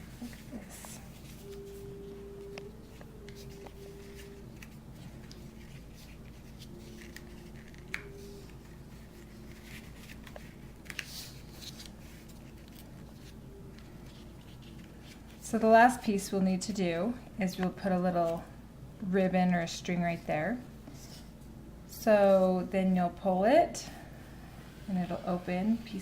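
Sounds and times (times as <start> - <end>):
faint steady hum: 0.0 - 26.0
paper rustling: 0.1 - 15.4.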